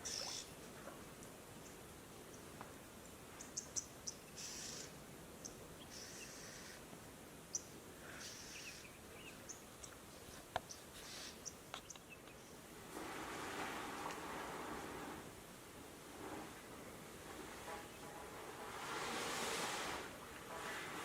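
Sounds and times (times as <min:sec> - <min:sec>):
insect and bird chirps: 0:00.0 - 0:00.6, 0:01.6 - 0:12.7
brief hissing bursts: 0:18.7 - 0:21.0.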